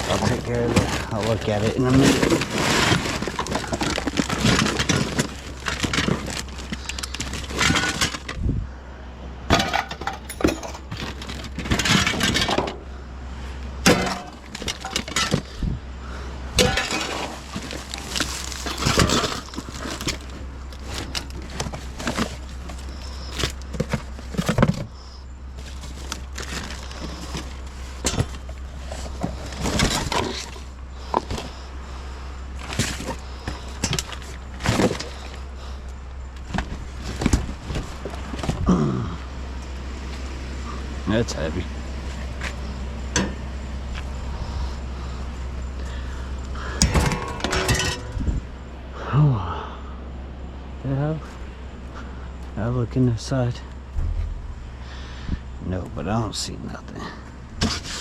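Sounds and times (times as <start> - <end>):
broken glass and scrap clattering: 0.0 - 8.3, 9.5 - 12.8, 13.8 - 15.5, 16.6 - 21.3, 46.8 - 48.2
steady low hum: 0.0 - 58.0.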